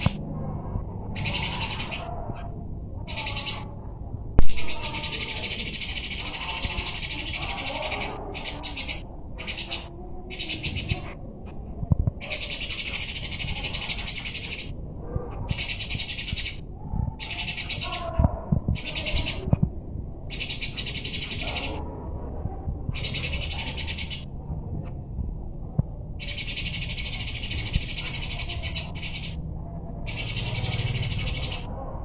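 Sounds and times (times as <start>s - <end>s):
weaker lower bird calls: 1.1s - 2.1s, 4.6s - 11.2s, 12.2s - 14.8s, 20.3s - 21.8s, 26.2s - 29.4s.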